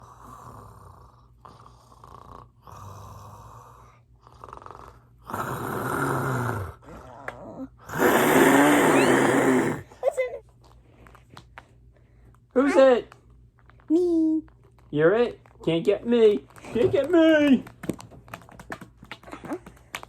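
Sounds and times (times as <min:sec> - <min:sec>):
person snoring: 0:00.0 - 0:09.9.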